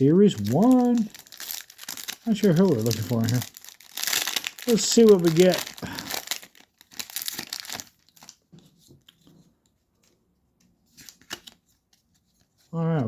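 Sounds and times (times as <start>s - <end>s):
foil wrapper tearing and crinkling: 0.0s - 8.4s.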